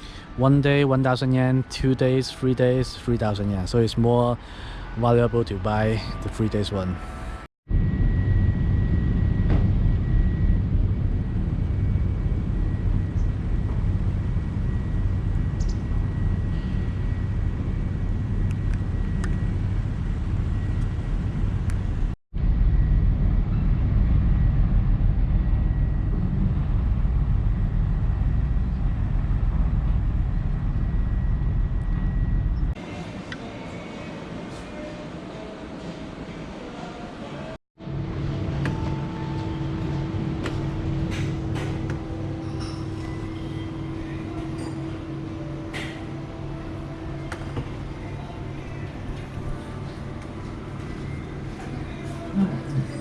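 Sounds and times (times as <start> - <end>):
faint high whine: 0.0 - 35.5, 37.8 - 53.0
vehicle rumble from inside: 7.8 - 32.8.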